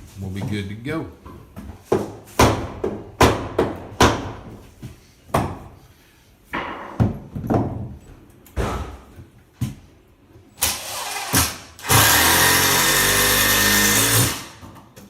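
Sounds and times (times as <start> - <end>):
sharp ringing bangs on wood framing: 2.4 - 4.4.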